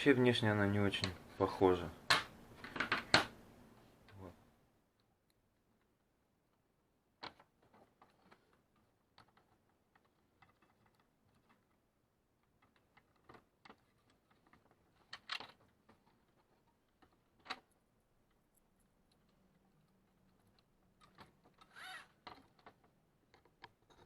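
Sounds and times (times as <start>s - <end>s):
plastic parts clicking: 7.2s - 24.0s.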